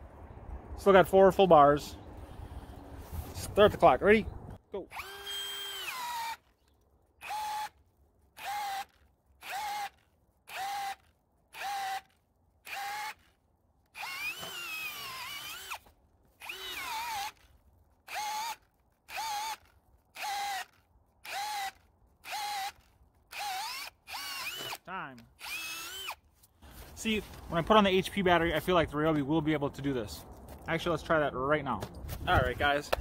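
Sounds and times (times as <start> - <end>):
power drill boring wood: 4.9 - 6.6, 7.2 - 7.8, 8.4 - 13.3, 13.9 - 17.4, 18.1 - 24.8, 25.4 - 26.2.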